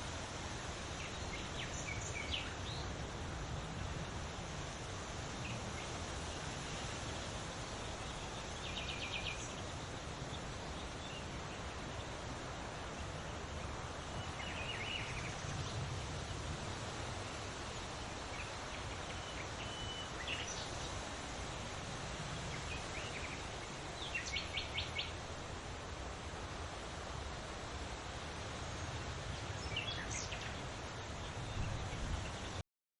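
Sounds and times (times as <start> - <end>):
wind rustling through leaves: 0.0 - 32.6
small birds chirping: 4.8 - 25.2, 28.5 - 32.6.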